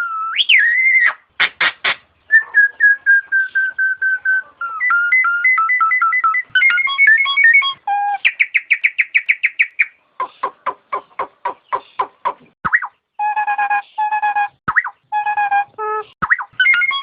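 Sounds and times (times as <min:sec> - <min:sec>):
bird singing clear whistles: 0:00.0 - 0:01.2, 0:02.3 - 0:10.0, 0:16.2 - 0:17.0
bird trill: 0:00.0 - 0:17.0
sharp bird chirps: 0:04.6 - 0:13.0, 0:16.2 - 0:17.0.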